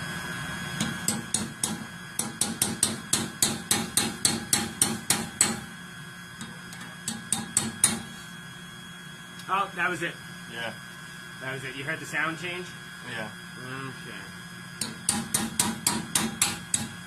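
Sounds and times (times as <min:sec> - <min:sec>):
hammer tapping on metal pipe: 0:01.1 - 0:05.6, 0:14.8 - 0:16.9.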